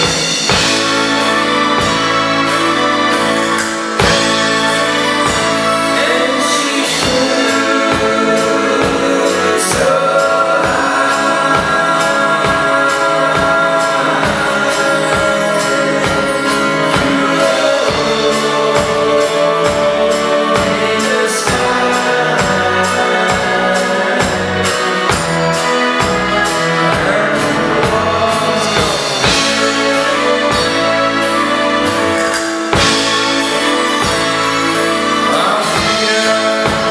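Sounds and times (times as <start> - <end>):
live pop-rock band: 0.0 - 36.9
steady drum beat: 0.0 - 36.9
voices singing held notes: 0.0 - 36.9.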